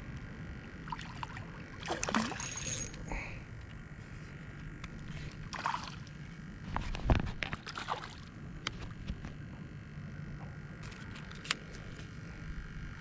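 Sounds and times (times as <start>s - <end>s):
water sloshing against boat: 0.8s - 3.2s, 4.9s - 9.2s
short splashes: 0.9s - 2.6s, 5.5s - 6.1s, 7.6s - 8.2s.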